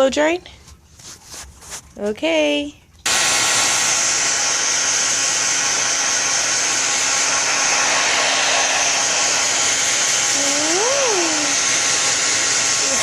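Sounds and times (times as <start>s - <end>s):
short rising pitched sound: 3.1s - 12.4s
hair dryer running: 3.1s - 13.0s.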